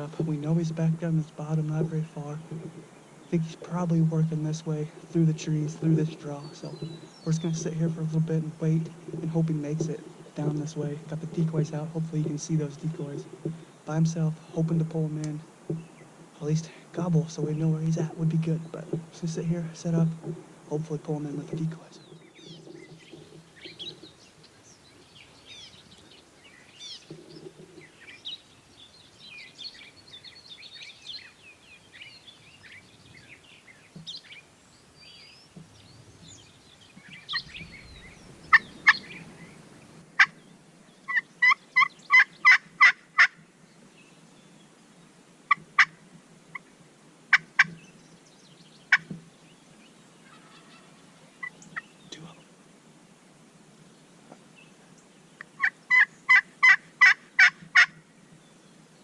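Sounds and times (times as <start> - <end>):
songbirds chirping faintly: 0.0 - 59.0
turkey yelps and clucks: 38.5 - 39.2, 41.1 - 43.4, 50.2 - 51.9, 55.6 - 57.9.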